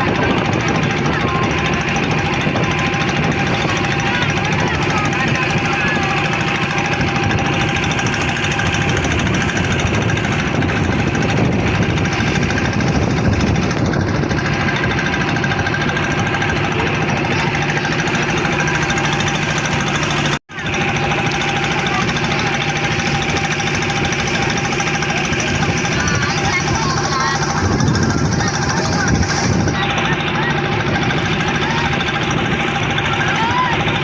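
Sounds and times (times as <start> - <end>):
motorboat engine chugging: 0.0 - 34.0.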